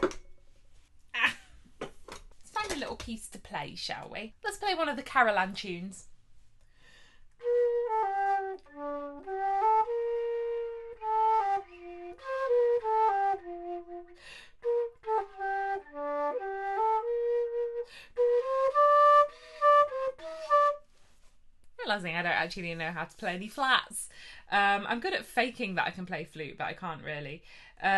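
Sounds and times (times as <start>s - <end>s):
flute melody: 7.4s - 20.9s.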